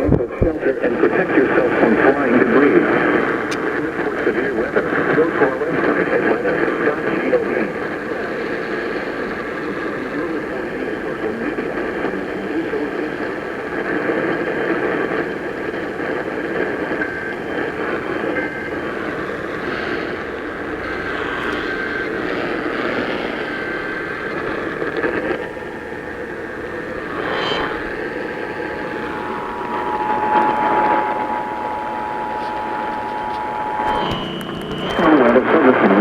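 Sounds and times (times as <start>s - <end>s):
radio static hiss: 0.0s - 36.0s
two-tone attention signal: 15.8s - 36.0s
faint short tones: 15.9s - 36.0s.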